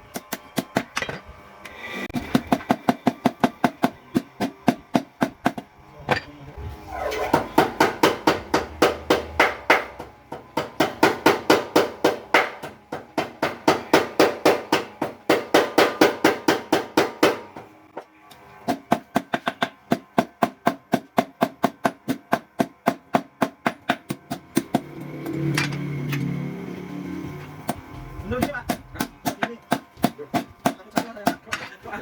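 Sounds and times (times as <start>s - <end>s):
power hammer striking: 7.2s - 17.7s, 18.7s - 26.4s.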